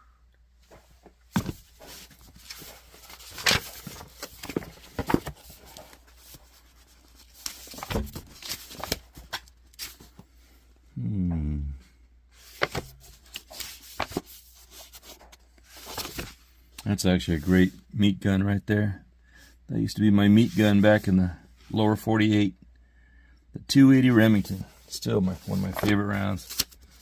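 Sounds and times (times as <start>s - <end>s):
low falling groan: 11.0s - 11.8s.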